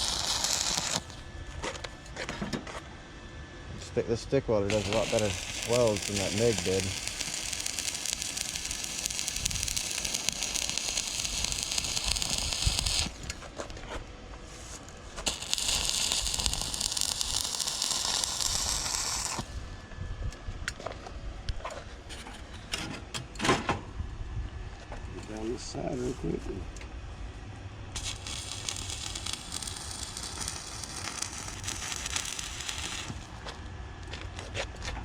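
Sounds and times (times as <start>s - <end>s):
welding arc crackling and hissing: 0.0s - 1.3s, 4.2s - 13.7s, 15.2s - 19.6s, 28.0s - 33.6s.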